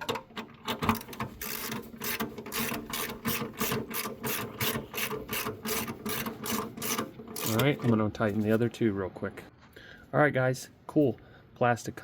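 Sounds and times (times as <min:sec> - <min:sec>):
ratchet wrench clicking: 0:00.9 - 0:07.8.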